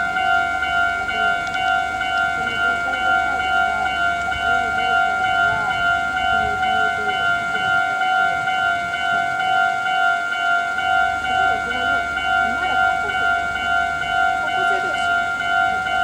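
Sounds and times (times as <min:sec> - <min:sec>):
level-crossing warning bell: 0:00.0 - 0:16.0.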